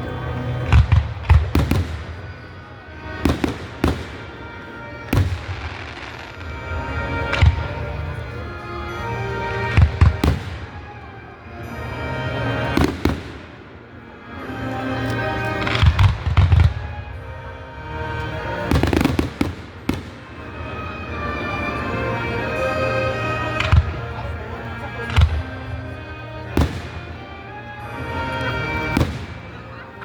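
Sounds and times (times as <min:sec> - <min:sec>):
music: 0:00.0 - 0:30.0
fireworks bangs: 0:00.6 - 0:08.2, 0:09.7 - 0:11.1, 0:12.7 - 0:13.7, 0:18.1 - 0:20.8, 0:26.4 - 0:27.3, 0:28.7 - 0:30.0.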